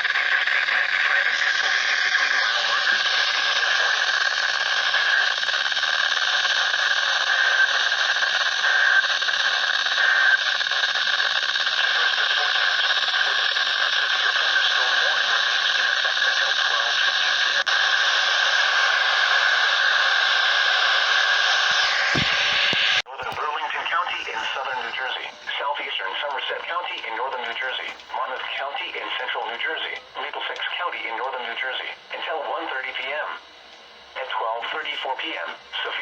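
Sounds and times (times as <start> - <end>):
radio static hiss: 0.0 - 36.0.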